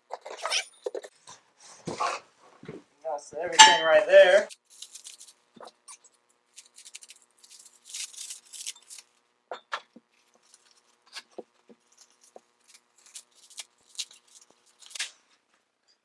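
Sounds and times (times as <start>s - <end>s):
rustling: 4.5s - 15.6s.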